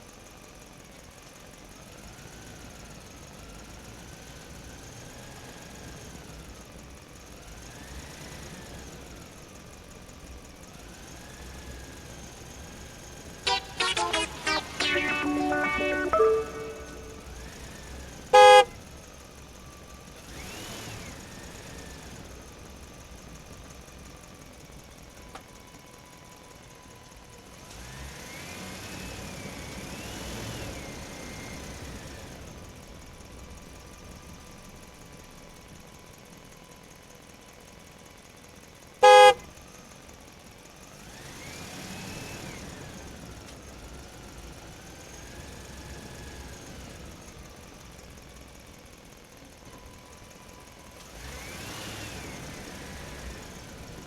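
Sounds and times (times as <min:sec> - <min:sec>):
vehicle horn toot: 0:13.5 - 0:17.3, 0:18.4 - 0:18.7, 0:39.0 - 0:39.4
faint vehicle engine: 0:32.4 - 0:41.0.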